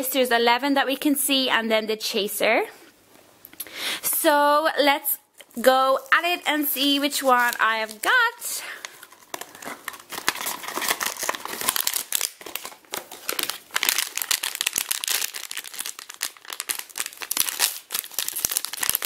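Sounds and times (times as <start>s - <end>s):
packaging crinkling and tearing: 5.6s - 19.0s.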